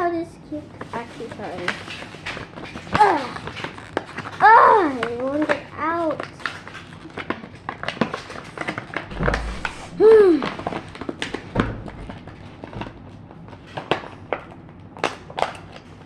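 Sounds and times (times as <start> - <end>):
plastic packaging crackling: 0.7 - 10.0.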